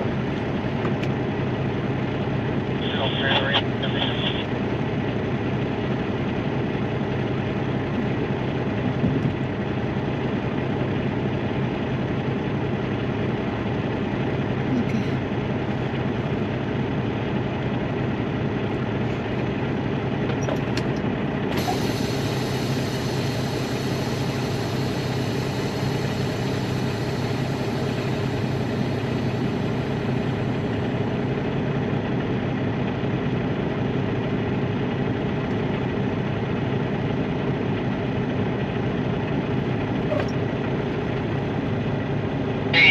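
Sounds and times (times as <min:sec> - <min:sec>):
diesel engine idling: 0:00.0 - 0:42.9.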